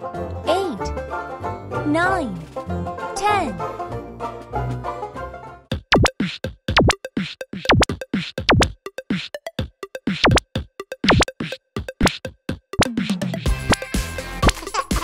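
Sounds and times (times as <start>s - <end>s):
electronic drum-machine beat: 5.7s - 15.0s.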